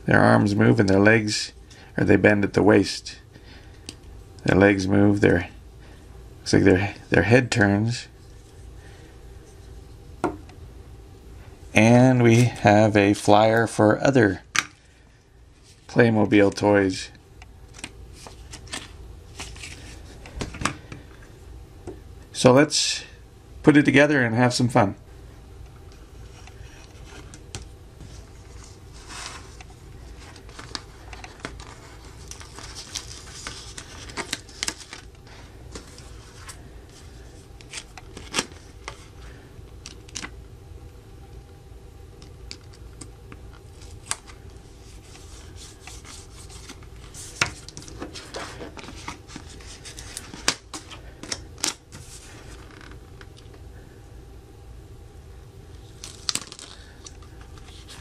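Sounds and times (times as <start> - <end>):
steady low hum: 0.0 - 58.0
rustling and scraping: 17.7 - 21.0, 25.9 - 39.2, 43.6 - 53.0, 55.8 - 58.0.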